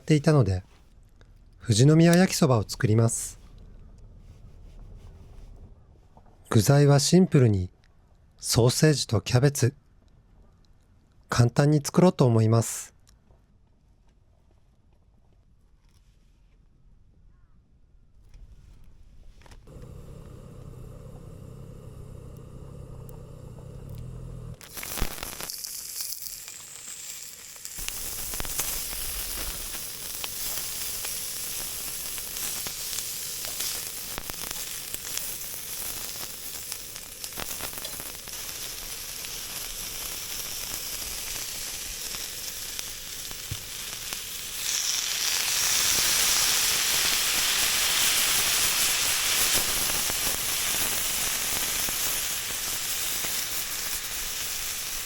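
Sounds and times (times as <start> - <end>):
food sizzling in a pan: 24.6 - 55.0.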